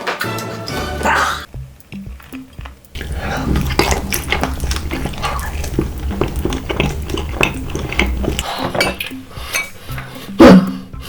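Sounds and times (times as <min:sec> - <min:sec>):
utensils clinking against dishes: 0:03.0 - 0:10.2.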